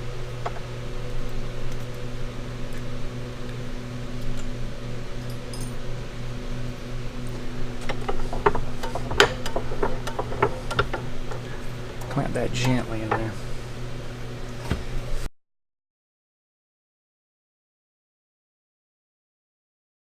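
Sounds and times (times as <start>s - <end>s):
mechanical hum: 0.0s - 15.3s
light metal clicks and knocks: 7.8s - 13.4s.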